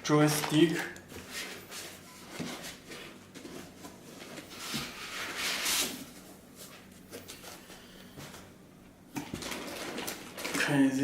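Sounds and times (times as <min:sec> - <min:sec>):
packaging rustling and crinkling: 0:09.2 - 0:10.8.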